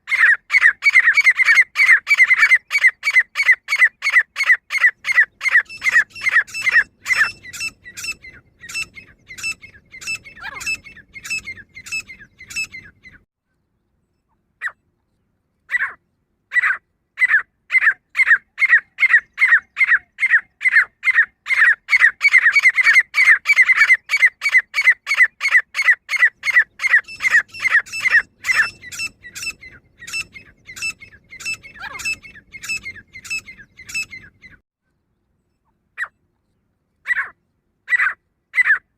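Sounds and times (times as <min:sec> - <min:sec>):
bird calling harsh notes: 0:00.0 - 0:13.2, 0:15.7 - 0:34.6.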